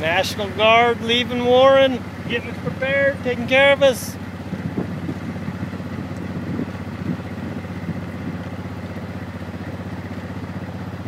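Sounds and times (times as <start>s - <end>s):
vehicle engine idling: 0.0s - 11.0s.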